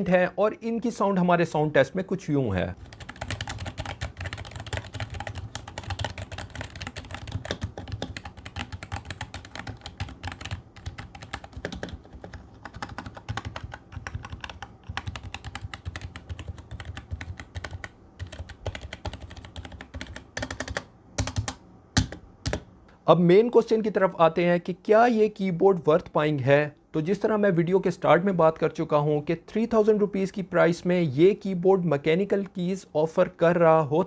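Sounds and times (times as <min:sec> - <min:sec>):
soft keyboard typing: 0:02.8 - 0:22.7.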